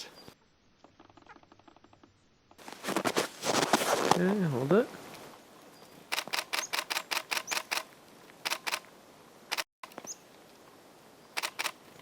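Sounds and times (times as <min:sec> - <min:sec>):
camera shutter burst: 0:06.1 - 0:08.9, 0:11.4 - 0:11.8.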